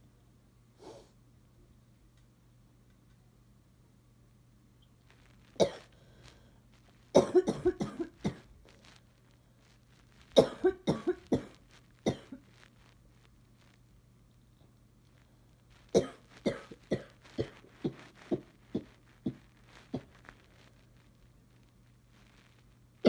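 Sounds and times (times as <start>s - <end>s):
girl coughing: 5.6s - 5.8s, 7.2s - 8.4s, 10.4s - 11.5s, 12.1s - 12.4s, 16.0s - 17.6s.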